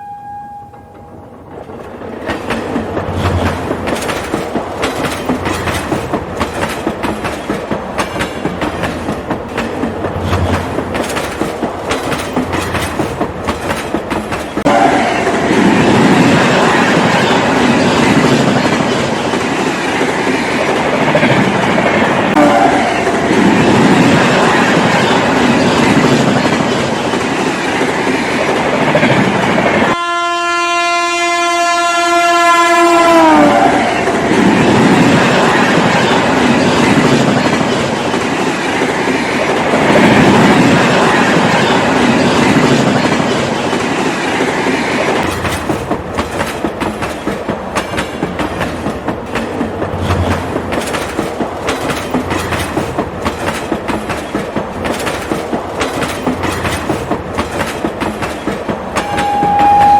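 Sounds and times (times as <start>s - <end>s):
train horn blast: 0.0s - 1.1s, 14.6s - 15.7s, 22.4s - 23.2s, 29.9s - 34.1s, 59.0s - 59.9s
train rumble and clatter: 0.7s - 30.0s, 32.8s - 59.9s
wheels clicking over rail joints: 1.4s - 14.7s, 45.2s - 59.9s.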